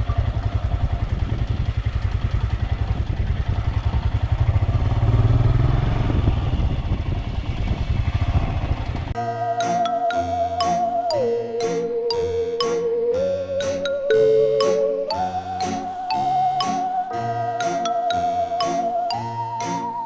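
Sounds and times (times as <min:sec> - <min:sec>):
motorcycle engine running: 0:00.0 - 0:09.1
music: 0:09.2 - 0:20.0.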